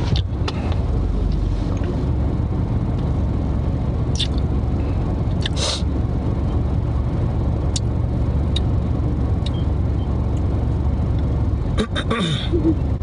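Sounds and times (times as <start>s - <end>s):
car engine idling rumble: 0.0s - 13.0s.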